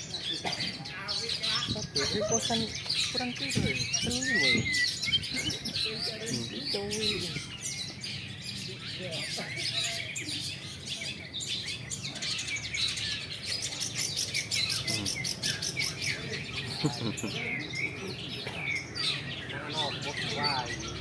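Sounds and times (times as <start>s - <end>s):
birds chirping and whistling: 0.0s - 21.0s.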